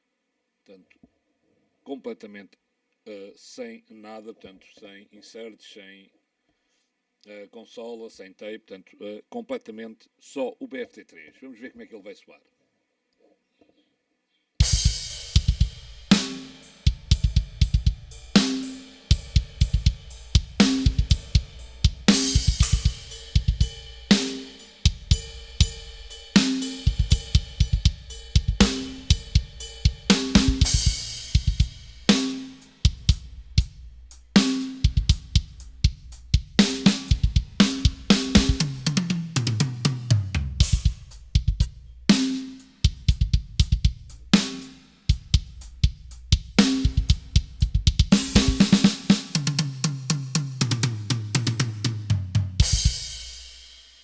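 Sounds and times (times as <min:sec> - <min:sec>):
kick drum: 0:14.6 - 0:16.2, 0:16.9 - 0:18.4, 0:19.1 - 0:24.2, 0:24.9 - 0:26.0, 0:26.8 - 0:32.1, 0:32.8 - 0:34.1, 0:34.8 - 0:38.8, 0:40.6 - 0:42.0, 0:42.9 - 0:44.5, 0:45.1 - 0:48.8
cymbal crashes: 0:14.6 - 0:38.8
hi-hat: 0:14.6 - 0:39.1, 0:40.6 - 0:49.6
snare drum: 0:14.6 - 0:54.0.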